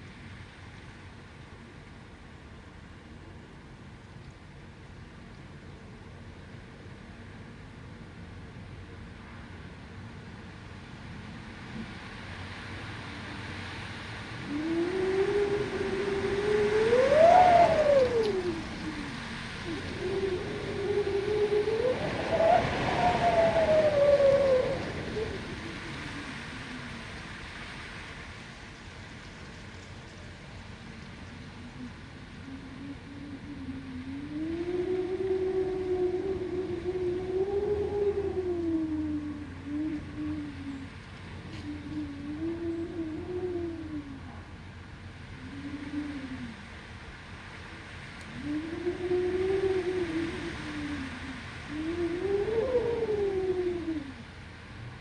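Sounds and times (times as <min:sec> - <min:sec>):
wind moaning tone: 0:11.3 - 0:28.7, 0:30.1 - 0:55.0
wind rushing: 0:14.4 - 0:27.8.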